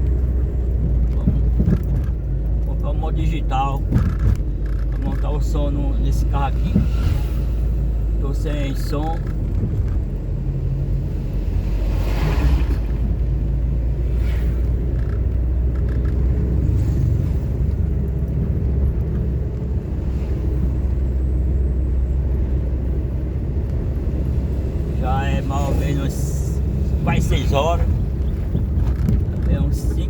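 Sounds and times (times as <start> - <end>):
car engine and road drone: 0.0 - 30.0
rush of noise: 6.2 - 8.0.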